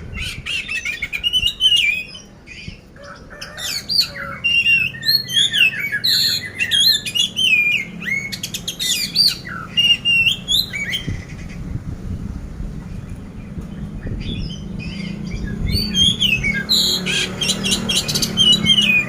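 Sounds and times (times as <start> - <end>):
songbird singing whistles: 0.2 - 2.8, 3.7 - 11.2, 14.2 - 19.0.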